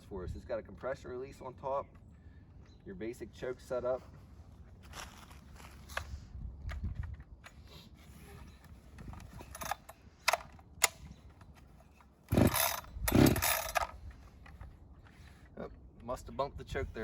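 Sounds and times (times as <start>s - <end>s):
chainsaw starter rope pulls: 7.5s - 11.4s, 12.0s - 15.6s.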